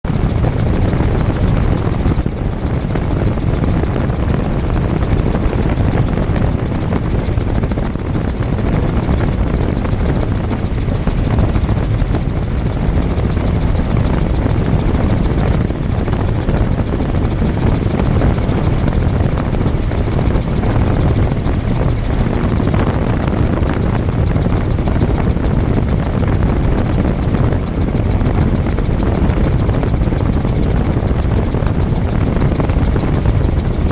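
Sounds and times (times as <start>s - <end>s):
helicopter rotor and engine noise: 0.0s - 33.9s.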